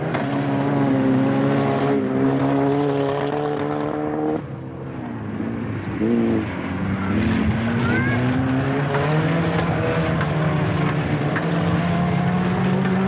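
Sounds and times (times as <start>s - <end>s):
racing car engine revving: 0.0s - 13.0s.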